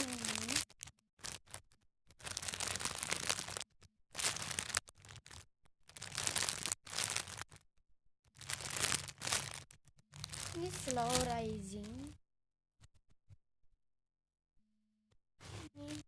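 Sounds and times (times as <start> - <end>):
plastic packaging crinkling: 0.0 - 7.6, 8.3 - 12.1.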